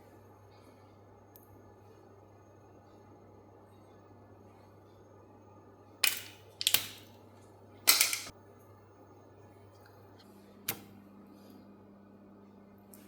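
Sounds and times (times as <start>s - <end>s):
faint steady hum: 0.0s - 13.0s
hard objects clacking together: 6.0s - 7.0s, 7.9s - 8.3s.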